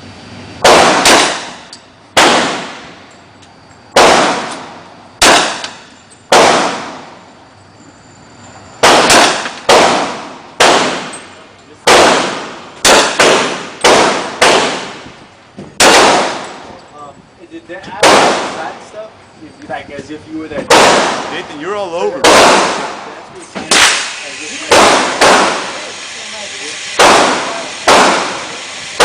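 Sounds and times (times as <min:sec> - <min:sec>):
rifle gunshots: 0:00.6 - 0:03.0, 0:04.0 - 0:07.1, 0:08.8 - 0:11.2, 0:11.8 - 0:15.1, 0:15.8 - 0:16.6, 0:18.0 - 0:18.8, 0:20.7 - 0:21.5, 0:22.2 - 0:23.1, 0:23.7 - 0:25.8, 0:27.0 - 0:28.6.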